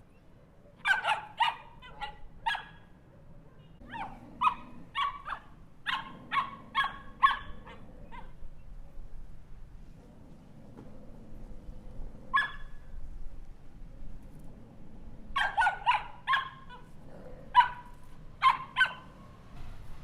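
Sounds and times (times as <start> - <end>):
small dog barking: 0.8 - 2.9, 3.5 - 8.4, 12.3 - 12.8, 15.3 - 19.3.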